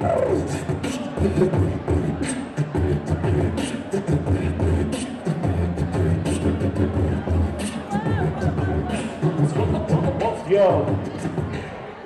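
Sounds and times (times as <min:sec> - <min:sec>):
hip hop beat with deep bass: 0:00.0 - 0:11.8.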